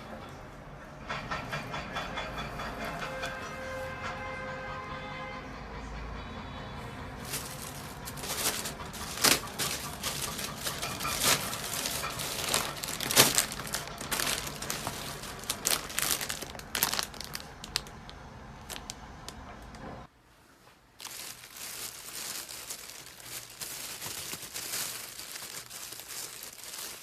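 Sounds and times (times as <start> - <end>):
packaging tearing: 7.2 - 19.0, 21.0 - 27.0
packaging crinkling and rustling: 7.2 - 19.9, 21.0 - 27.0.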